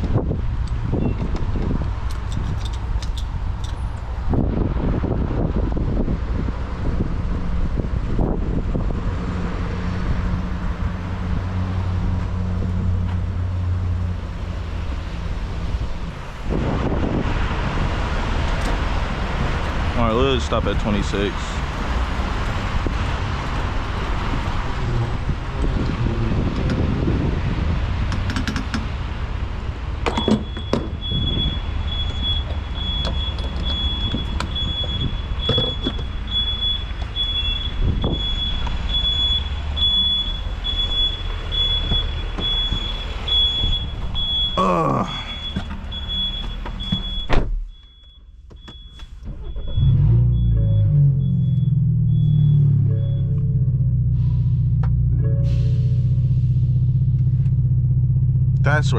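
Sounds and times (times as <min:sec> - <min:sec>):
car engine idling: 0:18.4 - 0:26.6, 0:28.0 - 0:58.9
scattered clicks: 0:28.1 - 0:28.9
pulsing electronic beep: 0:30.2 - 0:44.6, 0:45.4 - 0:53.8.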